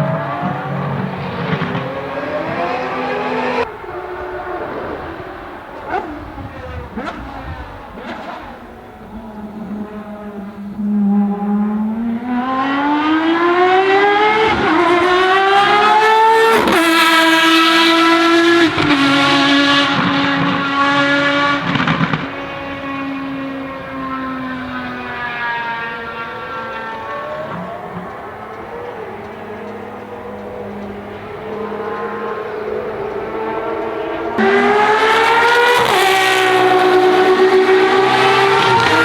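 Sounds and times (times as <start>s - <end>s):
racing engine accelerating: 0.0s - 39.0s.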